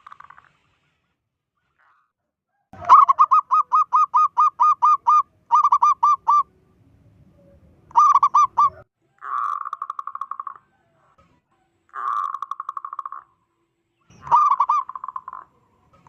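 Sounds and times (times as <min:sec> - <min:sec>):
dove cooing in staccato notes: 0:02.8 - 0:06.5, 0:14.1 - 0:15.6.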